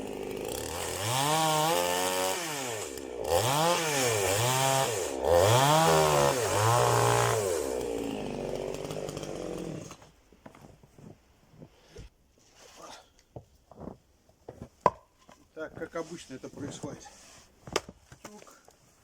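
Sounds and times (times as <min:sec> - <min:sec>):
chainsaw revving: 0:00.0 - 0:10.0.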